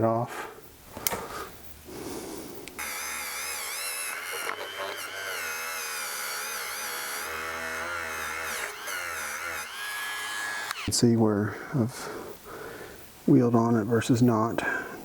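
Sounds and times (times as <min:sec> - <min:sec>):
rotary tool wire wheel whining: 0:02.8 - 0:11.0.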